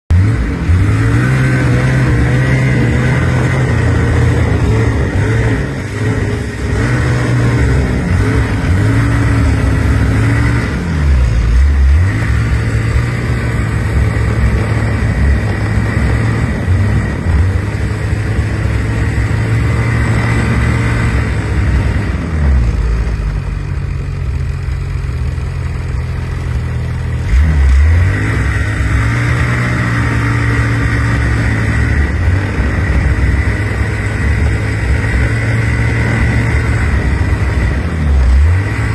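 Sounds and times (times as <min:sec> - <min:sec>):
snowmobile engine revving: 0:00.1 - 0:38.9.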